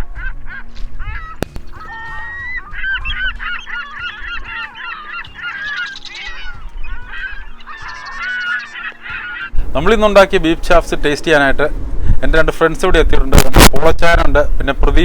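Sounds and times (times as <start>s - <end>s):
flock of birds calling: 0.0s - 9.7s.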